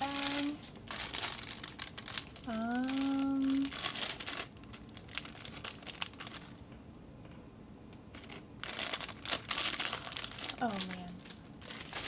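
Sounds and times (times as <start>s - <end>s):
plastic bags crinkling: 0.0s - 6.6s, 8.1s - 12.0s.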